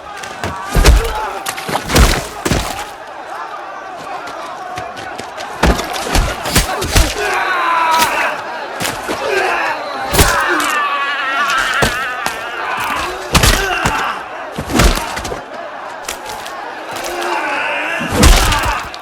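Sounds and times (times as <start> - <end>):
men shouting and grunting: 0.0 - 19.0
punch impacts: 0.3 - 3.0, 5.6 - 7.3, 10.1 - 10.6, 12.8 - 15.4, 18.2 - 19.0.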